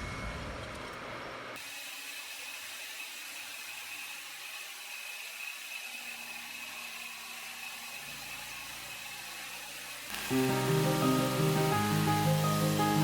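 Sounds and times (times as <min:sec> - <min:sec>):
high-pitched machine whine: 0:09.9 - 0:13.0
milling machine hiss: 0:10.1 - 0:13.0.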